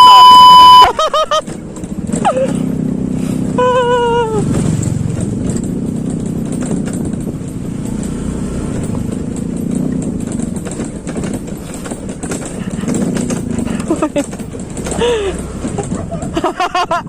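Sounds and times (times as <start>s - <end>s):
short high-pitched tone: 0.0s - 0.9s
road noise: 0.0s - 17.0s
scooter engine running: 0.0s - 17.0s.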